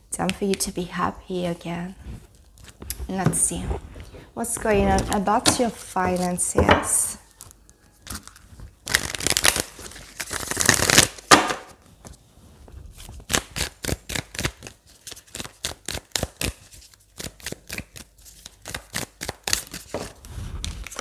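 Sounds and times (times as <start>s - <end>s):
cards rustling while shuffled: 7.3s - 11.1s, 12.8s - 21.0s.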